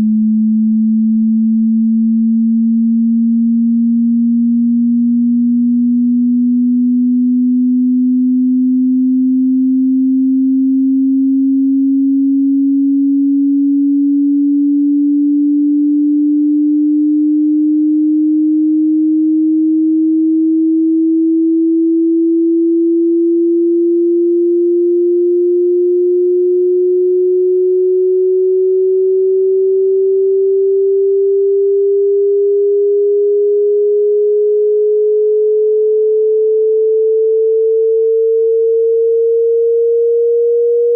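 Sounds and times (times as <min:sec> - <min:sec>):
sine tone rising in pitch: 0:00.0 - 0:40.9.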